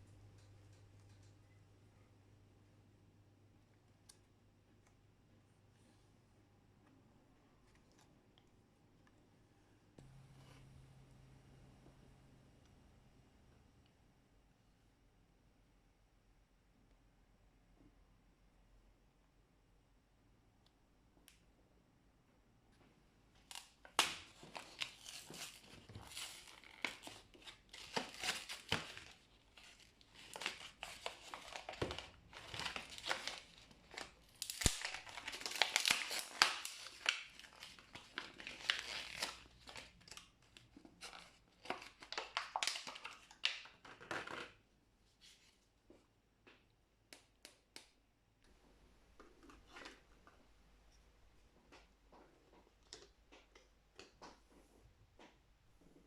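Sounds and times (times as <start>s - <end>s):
plastic packaging crinkling and tearing: 23.4s - 44.2s.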